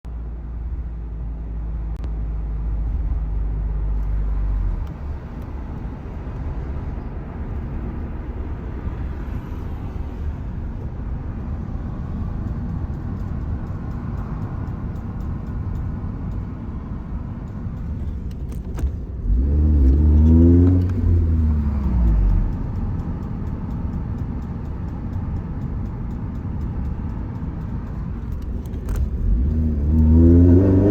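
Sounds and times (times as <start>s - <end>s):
car engine running: 0.1s - 30.9s
faint clicks from steering: 11.9s - 30.3s.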